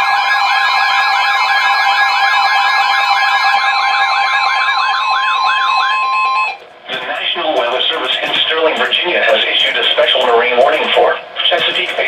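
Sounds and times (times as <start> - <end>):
fast warbling siren tone: 0.0 - 6.6
two steady alert tones: 0.0 - 6.6.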